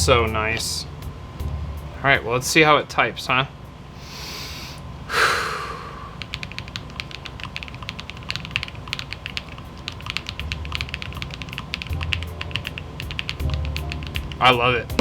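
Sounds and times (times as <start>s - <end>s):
mechanical keyboard clicks: 6.2s - 14.6s.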